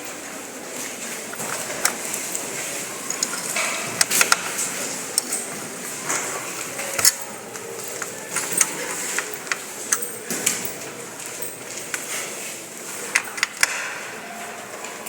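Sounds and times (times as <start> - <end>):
computer parts clicking and knocking: 3.0 - 5.5.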